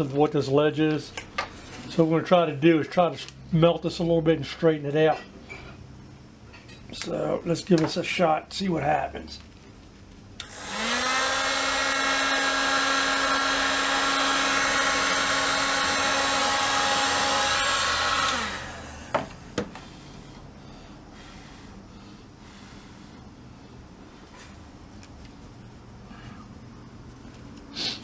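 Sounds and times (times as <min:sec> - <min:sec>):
hot-air blower fan running: 0:10.3 - 0:27.4.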